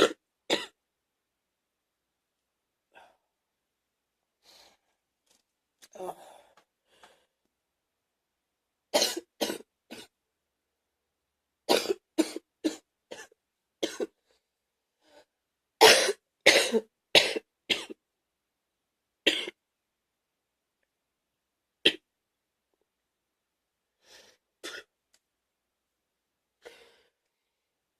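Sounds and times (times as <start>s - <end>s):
person coughing: 9.0s - 10.1s, 11.7s - 14.2s, 15.8s - 18.0s, 24.6s - 24.9s.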